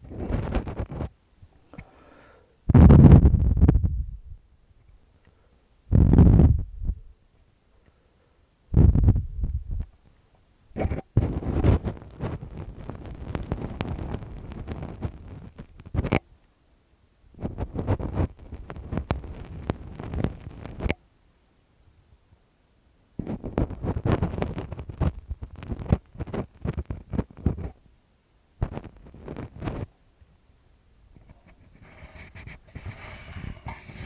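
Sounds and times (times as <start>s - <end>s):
gloved fingers rubbing microphone: 0.0s - 1.2s, 2.8s - 4.0s, 5.9s - 7.0s, 10.8s - 16.2s, 17.4s - 20.9s, 23.2s - 27.8s, 28.6s - 29.9s, 31.1s - 34.0s.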